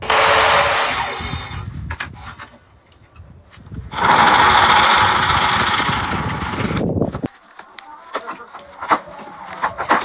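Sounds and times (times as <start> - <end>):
power tool working wood: 0.0 - 1.6, 3.9 - 6.8.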